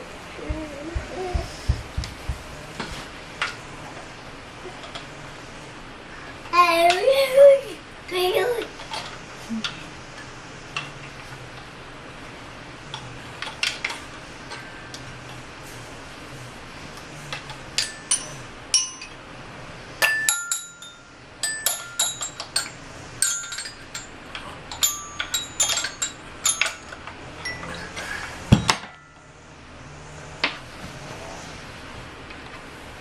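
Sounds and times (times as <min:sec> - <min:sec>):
heavy thump: 0:00.4 - 0:02.9
toy xylophone notes: 0:17.8 - 0:19.2, 0:20.0 - 0:24.1, 0:24.7 - 0:29.2.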